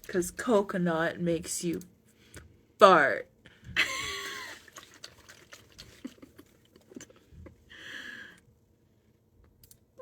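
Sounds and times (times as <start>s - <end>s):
small clicks and taps: 9.4s - 9.9s.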